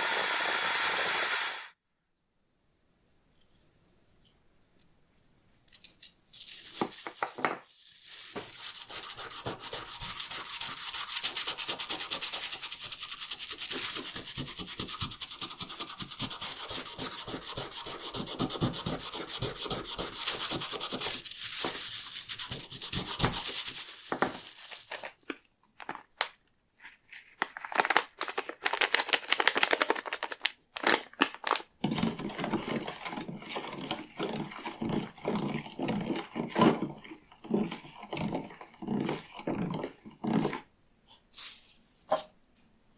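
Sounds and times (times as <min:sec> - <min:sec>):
hand scrubbing strokes: 0:08.0 - 0:24.8.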